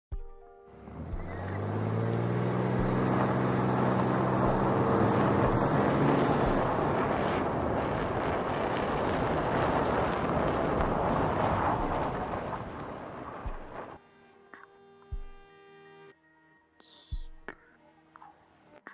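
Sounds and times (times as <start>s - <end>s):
car engine humming: 0.7s - 14.0s
rushing noise of car driving: 0.7s - 14.0s.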